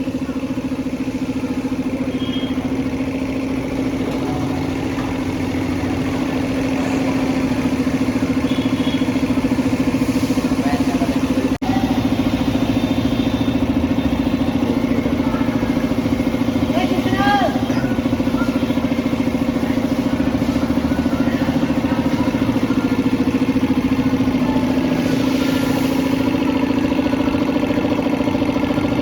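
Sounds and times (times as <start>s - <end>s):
motor running steadily: 0.0s - 29.0s.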